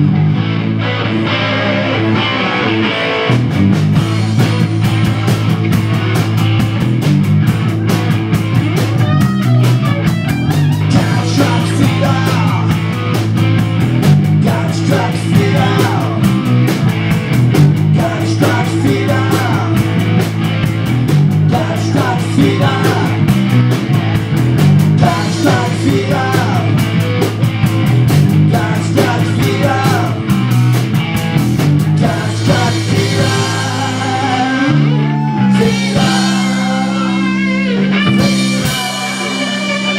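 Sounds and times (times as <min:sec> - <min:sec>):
rock band playing: 0:00.0 - 0:39.9
person singing: 0:10.7 - 0:12.9, 0:14.4 - 0:16.5, 0:17.9 - 0:20.0, 0:21.5 - 0:23.3, 0:25.0 - 0:26.8, 0:28.4 - 0:30.3, 0:31.9 - 0:39.9.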